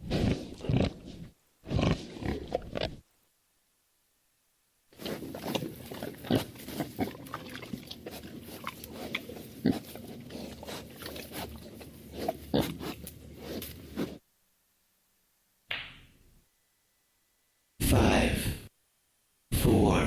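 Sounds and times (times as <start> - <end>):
pigs grunting: 0.0 - 3.0, 5.0 - 14.2.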